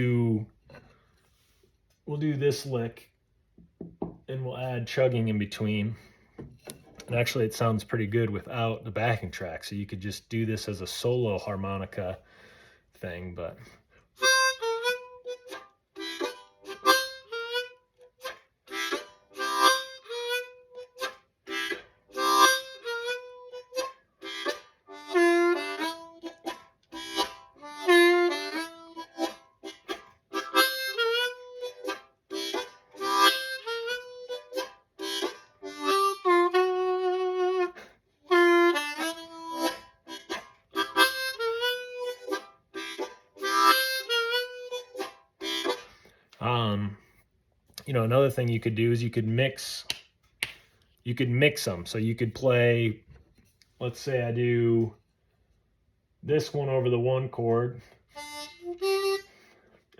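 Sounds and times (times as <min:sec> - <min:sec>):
blues harmonica playing: 0:14.2 - 0:46.7, 0:56.6 - 0:59.9.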